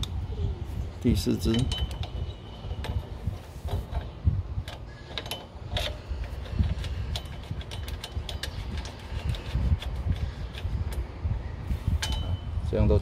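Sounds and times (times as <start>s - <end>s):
steady low rumble: 0.0s - 13.0s
bolt turned in by hand clicking: 3.7s - 11.1s.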